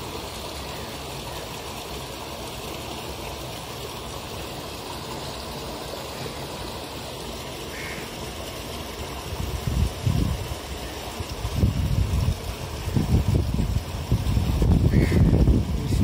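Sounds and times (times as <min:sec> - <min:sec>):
flowing water rushing: 0:00.0 - 0:16.0.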